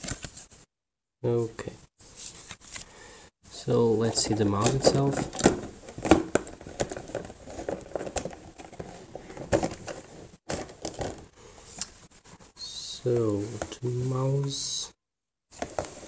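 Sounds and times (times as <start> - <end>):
packaging rustling and crinkling: 4.1 - 12.1.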